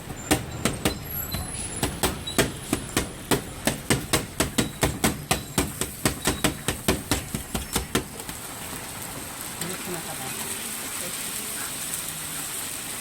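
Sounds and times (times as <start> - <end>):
metal spatula knocking on griddle: 0.3 - 8.3.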